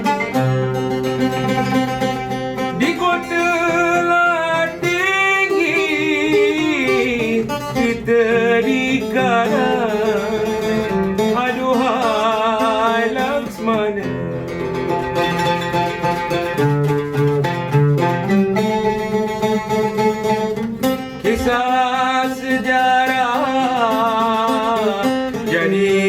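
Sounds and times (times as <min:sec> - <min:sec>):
plucked strings: 0:00.0 - 0:26.0
person singing: 0:02.7 - 0:14.8, 0:21.2 - 0:26.0.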